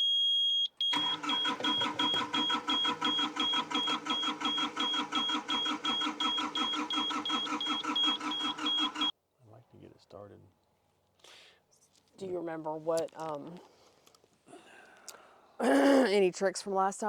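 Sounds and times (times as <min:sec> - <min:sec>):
high-pitched warning beep: 0:00.0 - 0:09.1
diesel engine cranking on starter: 0:00.9 - 0:09.1.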